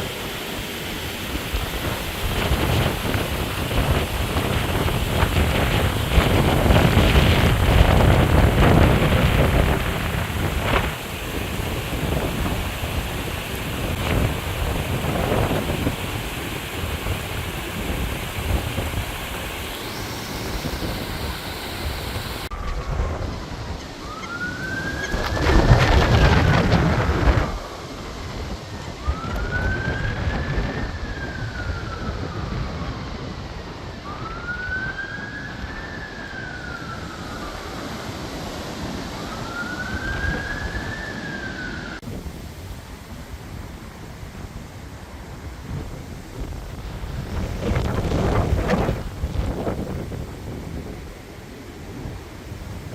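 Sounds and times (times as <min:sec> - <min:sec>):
wind buffeting microphone: 0:00.0 - 0:52.9
emergency siren wailing: 0:00.7 - 0:42.0.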